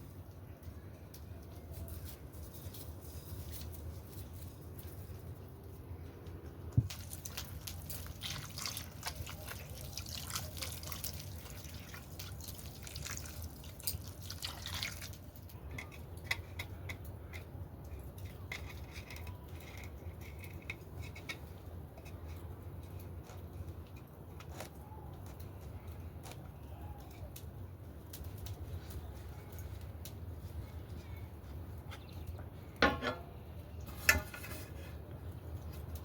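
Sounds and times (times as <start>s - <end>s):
water dripping: 6.8s - 15.6s.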